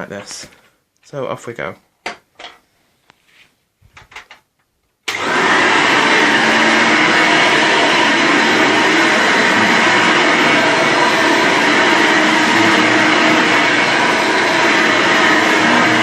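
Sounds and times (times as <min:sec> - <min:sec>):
vacuum cleaner motor running: 0:05.1 - 0:16.0.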